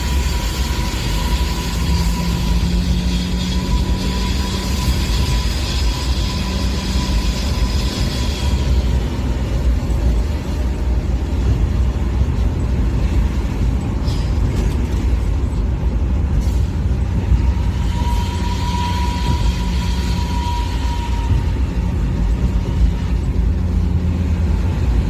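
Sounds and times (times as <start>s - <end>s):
diesel locomotive exhaust rumbling: 0.0s - 25.0s.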